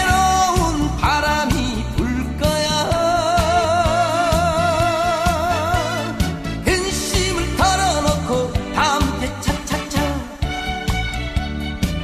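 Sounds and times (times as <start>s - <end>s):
singer with vibrato: 0.0s - 10.9s.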